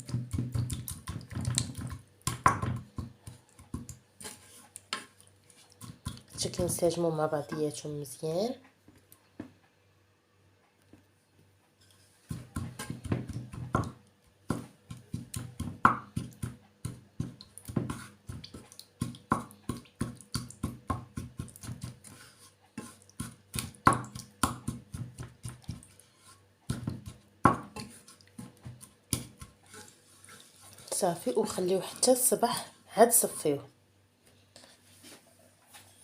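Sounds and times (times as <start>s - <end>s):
spoon stirring thick syrup: 0.0s - 7.8s, 11.8s - 32.4s.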